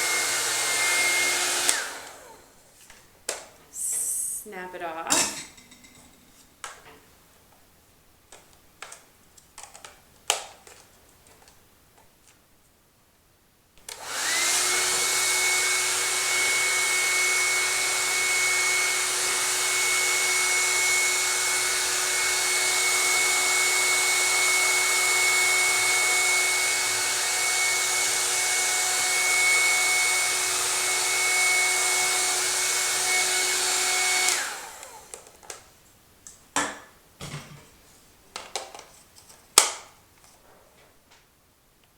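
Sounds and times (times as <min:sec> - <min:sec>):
hair dryer running: 0:00.0 - 0:02.6, 0:13.9 - 0:35.4.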